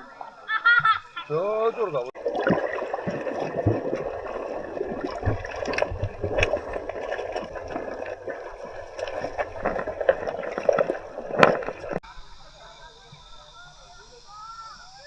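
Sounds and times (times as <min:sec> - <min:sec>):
sharp clicks and splashes: 0:02.2 - 0:12.0
stream water gurgling over rocks: 0:02.2 - 0:12.0.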